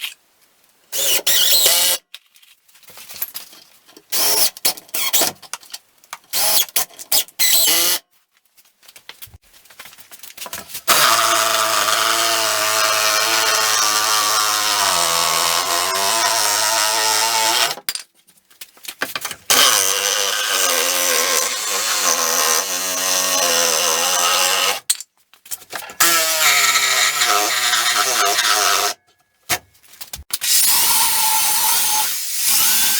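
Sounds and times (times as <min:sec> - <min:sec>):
power tool motor on wood: 0:10.9 - 0:17.8, 0:19.5 - 0:24.8, 0:26.0 - 0:29.0.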